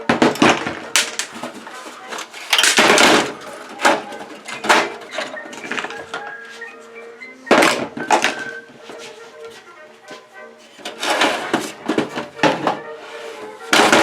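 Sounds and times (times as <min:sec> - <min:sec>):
metal parts clanking: 0:00.0 - 0:06.3, 0:10.7 - 0:12.8, 0:13.7 - 0:14.0.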